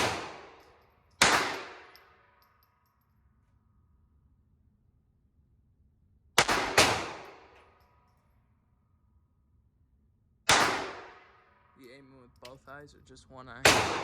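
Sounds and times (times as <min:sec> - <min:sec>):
pistol shots echoing: 0:00.0 - 0:00.6, 0:01.2 - 0:02.2, 0:06.4 - 0:07.6, 0:10.5 - 0:11.4, 0:13.6 - 0:14.0.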